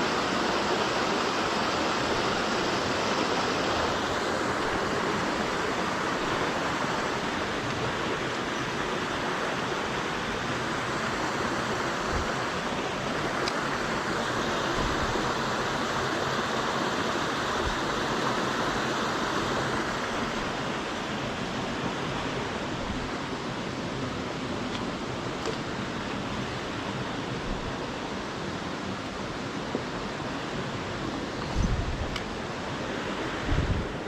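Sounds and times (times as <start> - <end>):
stream rushing: 0.0 - 34.0.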